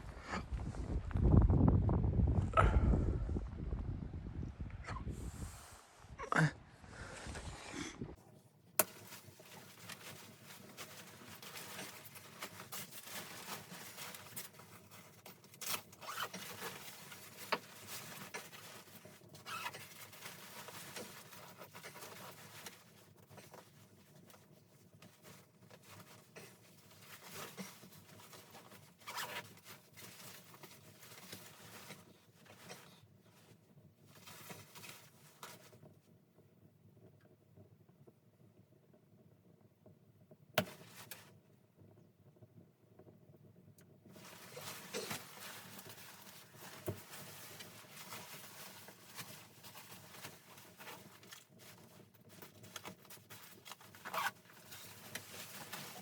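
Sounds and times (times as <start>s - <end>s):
faint rustling and handling: 8.2s - 36.3s, 40.6s - 42.0s, 43.0s - 56.0s.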